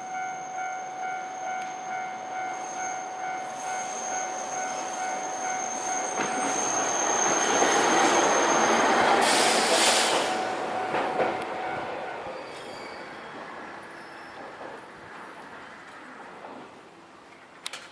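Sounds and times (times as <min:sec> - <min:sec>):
crossing warning bell: 0:00.0 - 0:09.1, 0:10.3 - 0:13.1
tram rolling on rails: 0:00.0 - 0:17.9
loud hiss: 0:09.0 - 0:10.5.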